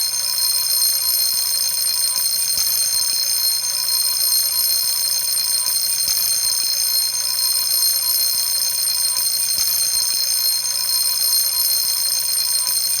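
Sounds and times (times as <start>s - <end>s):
fire alarm bell ringing: 0.0s - 13.0s.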